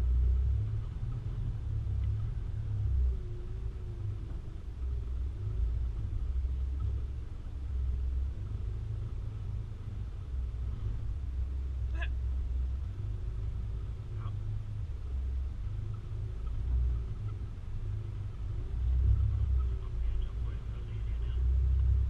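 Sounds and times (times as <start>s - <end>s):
vehicle driving rumble: 0.0s - 22.0s.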